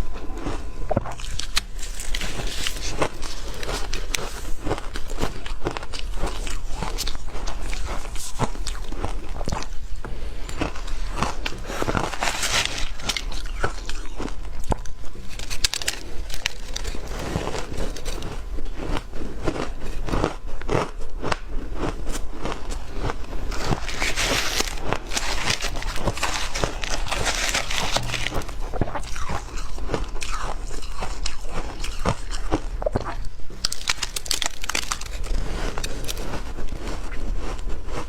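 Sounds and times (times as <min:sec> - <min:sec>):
ice being chewed: 0:00.0 - 0:38.0.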